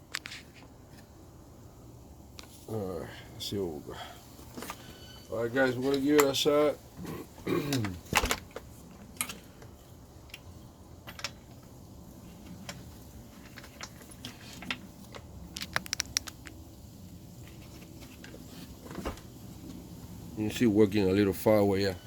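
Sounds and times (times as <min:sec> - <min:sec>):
small objects clicking and tapping: 0:12.5 - 0:16.6.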